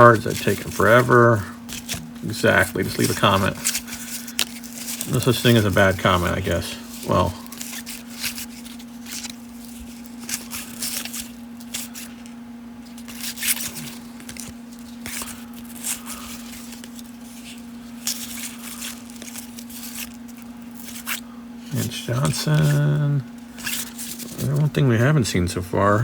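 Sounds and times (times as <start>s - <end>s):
wrapper tearing and crinkling: 0.0s - 24.7s
cards rustling: 0.0s - 25.7s
steady low hum: 0.0s - 26.0s.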